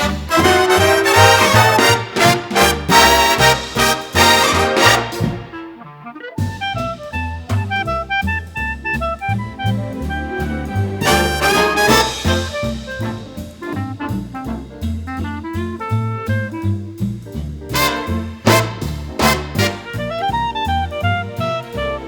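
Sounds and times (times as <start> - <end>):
swing jazz with brass: 0.0 - 22.0
walking bass: 0.0 - 22.0.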